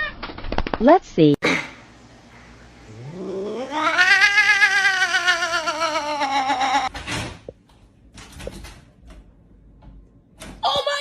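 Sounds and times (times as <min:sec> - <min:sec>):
cat yowling: 0:02.9 - 0:06.9.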